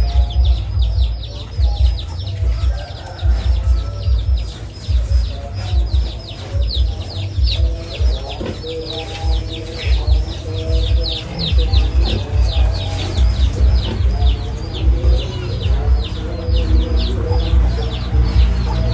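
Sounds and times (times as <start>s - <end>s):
background music: 0.0s - 18.9s
birds chirping: 0.0s - 18.9s.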